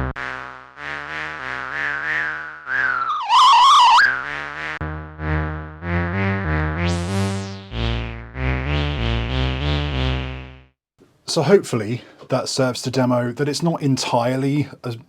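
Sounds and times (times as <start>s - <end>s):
analogue synthesiser playing: 0.0s - 10.5s.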